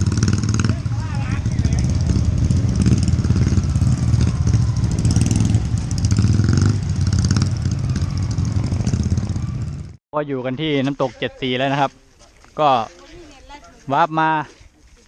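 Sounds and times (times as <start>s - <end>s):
small motorcycle engine running: 0.0s - 10.0s.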